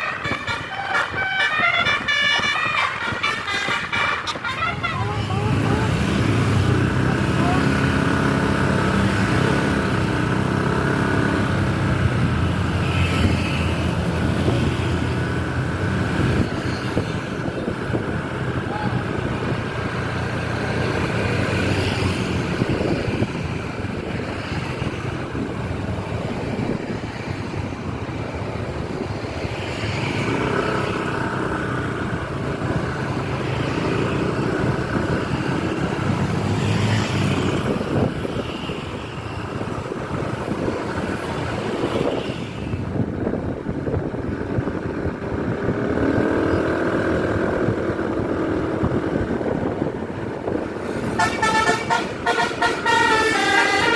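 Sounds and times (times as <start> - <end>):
multi-note bus horns: 0.0 - 6.0, 51.0 - 53.9
bus engine noise: 0.0 - 53.9.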